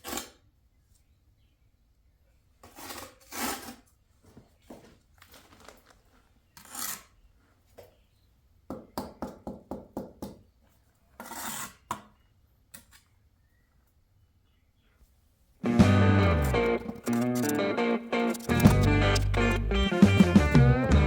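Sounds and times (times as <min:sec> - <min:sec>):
trowel scraping wet mortar: 0:02.6 - 0:03.9, 0:06.6 - 0:07.2, 0:11.2 - 0:11.9.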